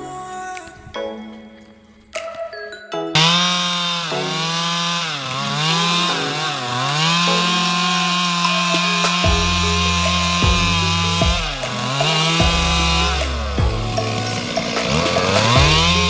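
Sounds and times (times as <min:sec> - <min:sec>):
chainsaw cutting wood: 0:03.2 - 0:16.0.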